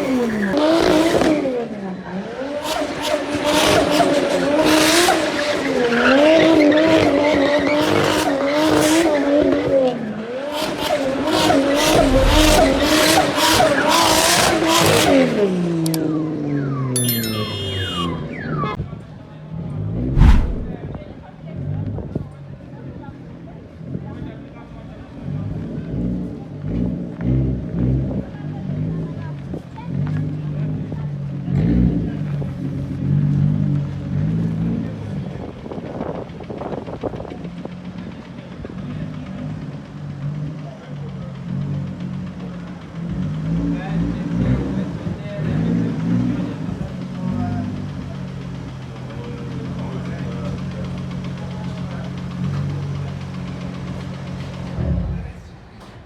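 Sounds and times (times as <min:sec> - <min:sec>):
car engine running at held revs: 0:00.0 - 0:16.3, 0:19.9 - 0:20.9, 0:21.5 - 0:55.7
car engine revving high: 0:02.6 - 0:15.9, 0:19.9 - 0:20.8.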